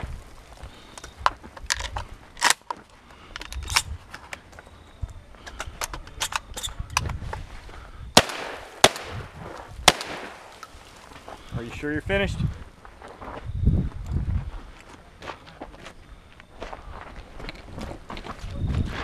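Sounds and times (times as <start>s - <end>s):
shotgun handling clicks: 0.9s - 4.4s, 5.4s - 7.2s
loud shotgun shots: 8.2s - 10.6s.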